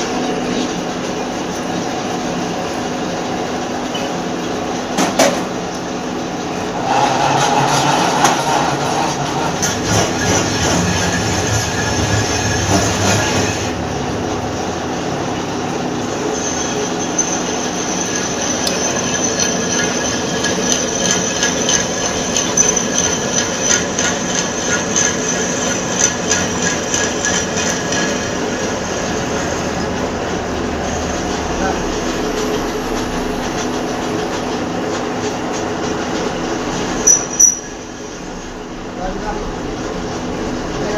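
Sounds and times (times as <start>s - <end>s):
lathe mechanical grinding: 0.0s - 40.9s
high metallic whine of cutting tool: 16.1s - 29.0s, 37.0s - 38.3s.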